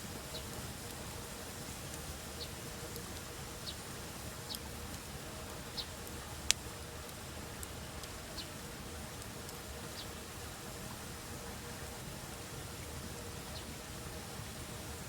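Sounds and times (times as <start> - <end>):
campfire burning: 0.0 - 15.0
faint fire crackles: 0.0 - 15.0.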